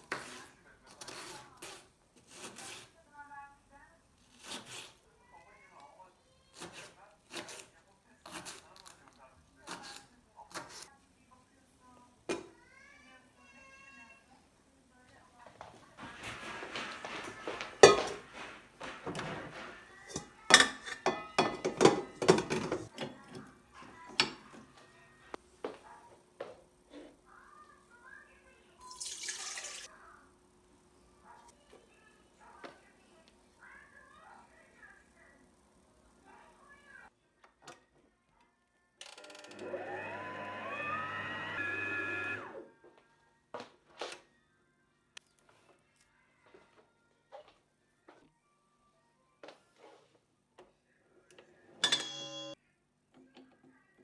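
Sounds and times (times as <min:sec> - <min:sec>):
dishes and utensils knocking: 0:16.0 - 0:24.7, 0:51.8 - 0:52.5.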